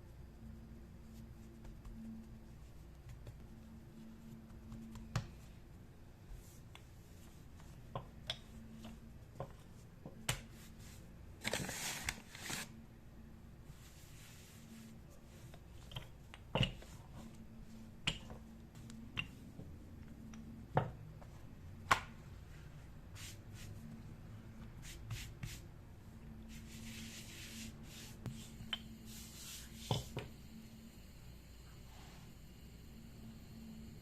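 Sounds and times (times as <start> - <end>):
soft rubbing: 13.6 - 15.8, 26.4 - 30.2.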